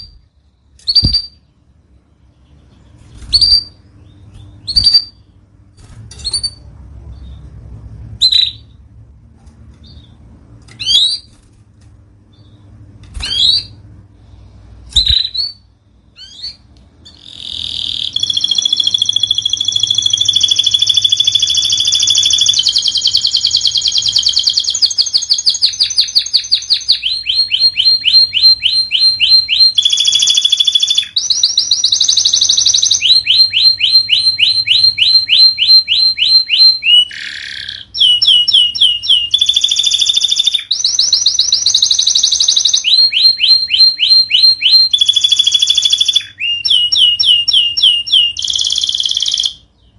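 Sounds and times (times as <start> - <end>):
canary song with trills: 0.0 - 49.9
canary call notes: 16.2 - 49.9.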